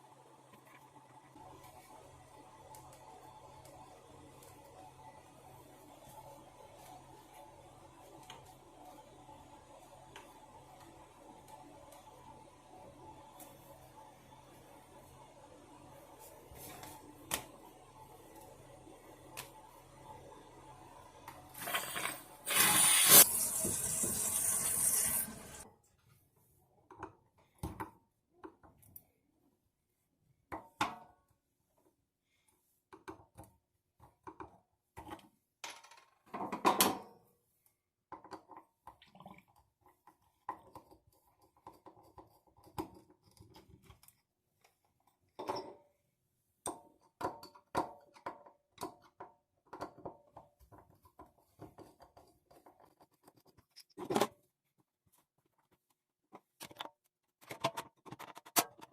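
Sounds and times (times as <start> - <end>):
water running: 21.6 - 25.7.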